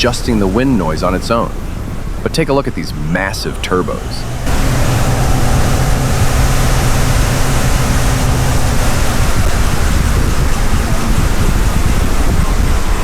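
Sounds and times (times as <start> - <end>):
fan air rushing against microphone: 2.8 - 12.5
diesel engine running: 3.2 - 12.2.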